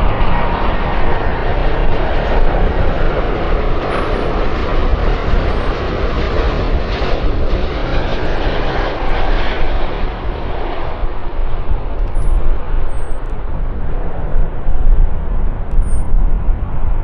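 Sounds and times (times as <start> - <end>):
airliner jet engines roaring: 0.0 - 17.0.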